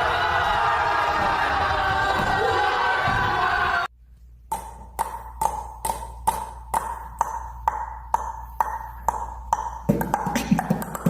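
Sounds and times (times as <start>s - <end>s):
beatboxed mouth clicks: 9.9s - 11.0s.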